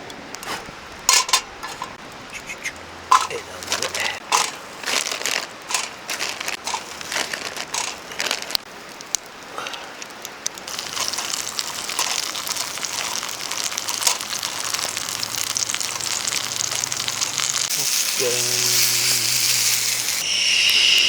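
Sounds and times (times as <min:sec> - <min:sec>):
crinkling and clicking from handling: 0:03.1 - 0:17.8
food sizzling in a pan: 0:10.7 - 0:21.0.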